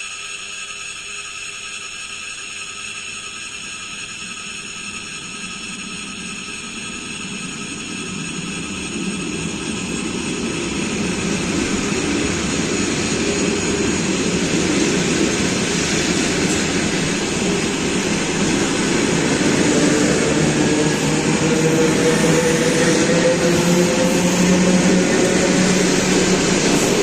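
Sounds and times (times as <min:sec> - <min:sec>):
faint whine rising in pitch: 0:00.0 - 0:27.0
train rumbling: 0:04.2 - 0:27.0.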